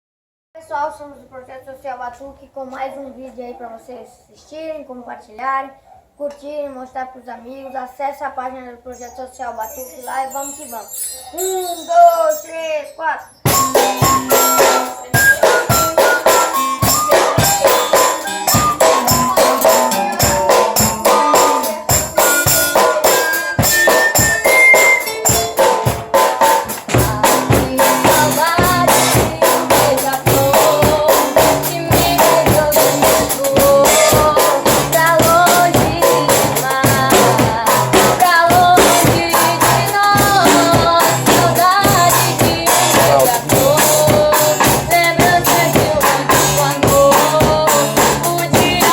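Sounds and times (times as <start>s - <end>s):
melody: 9.6s - 12.8s, 13.5s - 26.1s
fast hand percussion: 9.7s - 12.6s, 13.4s - 48.9s
bass line: 26.7s - 48.9s.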